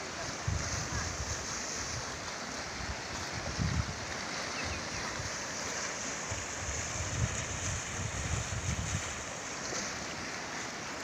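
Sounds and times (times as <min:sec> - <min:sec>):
river floodwater rushing: 0:00.0 - 0:11.0
wind buffeting microphone: 0:00.2 - 0:02.1, 0:02.8 - 0:05.5, 0:06.2 - 0:09.3.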